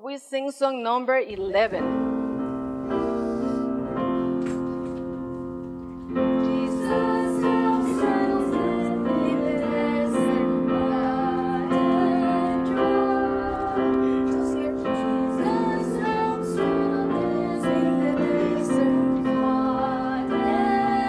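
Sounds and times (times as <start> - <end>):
keyboard accompaniment: 1.3 - 21.0
woman singing: 6.4 - 21.0.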